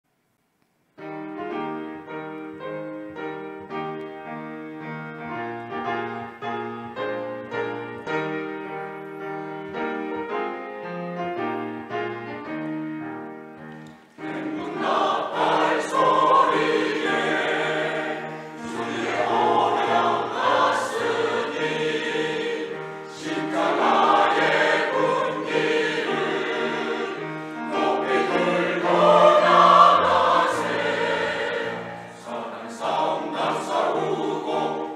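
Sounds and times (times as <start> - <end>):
piano playing: 1.0 - 34.9
choir singing in harmony: 14.2 - 34.9.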